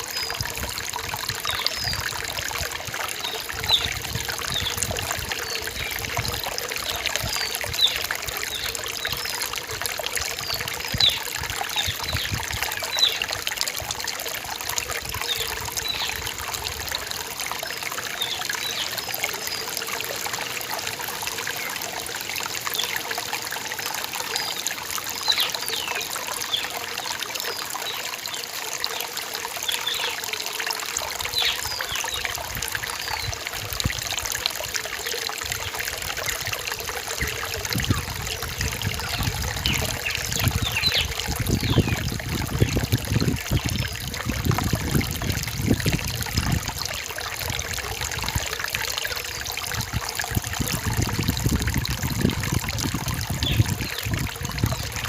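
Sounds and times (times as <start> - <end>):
stream water trickling: 0.0 - 55.0
deep rumble of water: 37.2 - 46.9, 49.4 - 55.0.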